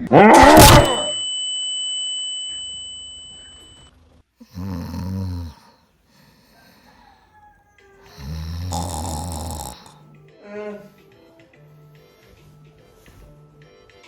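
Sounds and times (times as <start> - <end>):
high ringing tone: 0.4 - 3.8
low snore-like rumble: 4.5 - 5.7, 8.1 - 10.0.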